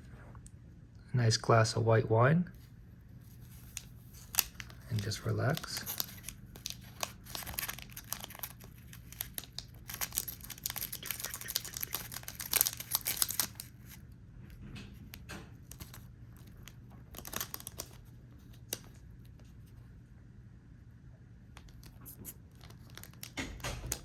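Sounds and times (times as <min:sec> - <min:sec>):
foil wrapper crinkling and tearing: 0:03.2 - 0:14.0, 0:15.6 - 0:19.0, 0:21.7 - 0:24.0.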